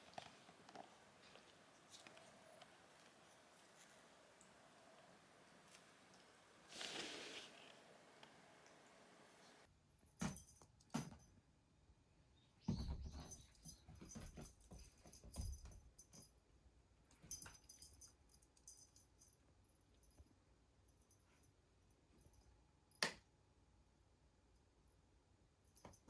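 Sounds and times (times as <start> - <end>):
small jingly clicks: 13.1 - 16.4, 17.1 - 21.5.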